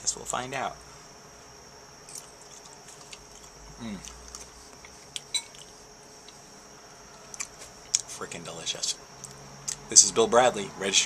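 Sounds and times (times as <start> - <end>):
person humming: 3.8 - 4.2.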